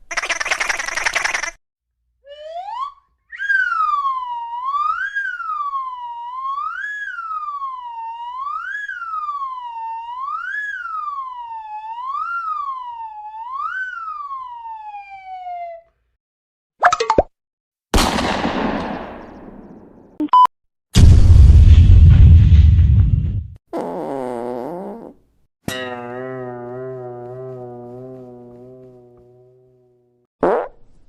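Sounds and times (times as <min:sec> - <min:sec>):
siren wailing: 0:02.2 - 0:15.9.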